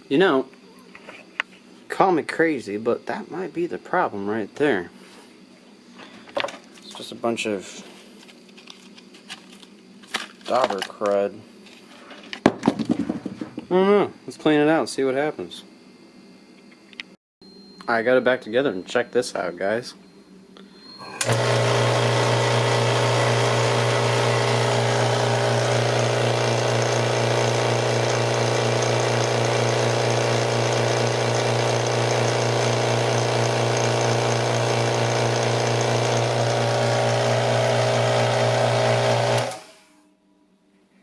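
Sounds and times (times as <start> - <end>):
electric air compressor running: 21.0 - 40.0.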